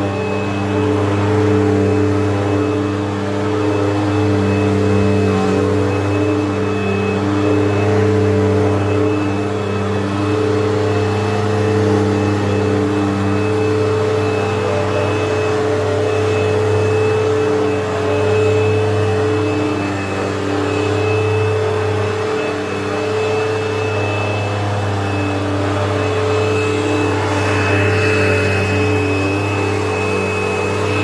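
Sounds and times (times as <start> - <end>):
vacuum cleaner running: 0.0 - 31.0.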